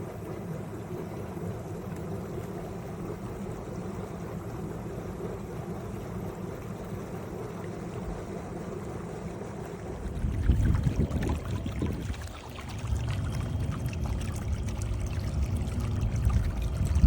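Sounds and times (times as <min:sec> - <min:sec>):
water splashing and pouring: 0:09.7 - 0:17.0
low rumbling noise: 0:09.9 - 0:17.0.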